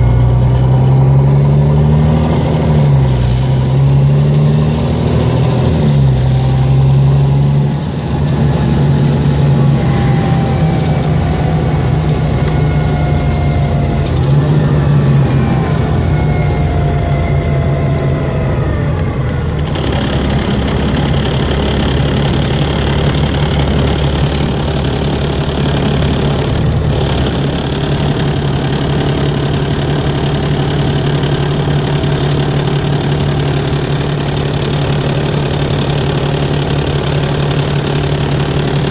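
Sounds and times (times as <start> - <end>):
bus diesel engine running: 0.0 - 38.9
thin whining tones: 7.8 - 26.2.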